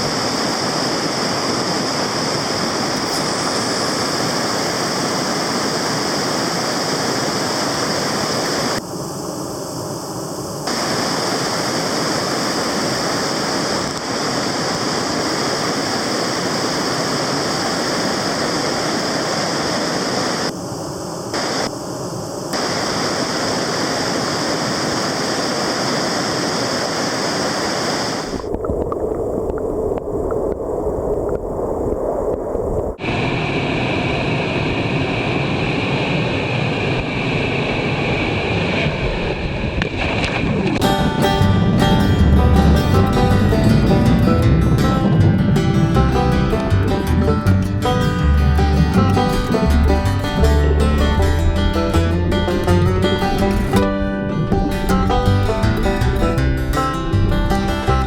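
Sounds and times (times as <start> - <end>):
water rushing over rocks: 0.0 - 8.8, 10.7 - 20.5, 22.6 - 35.8, 36.9 - 58.0
dull low rumble: 40.8 - 58.0.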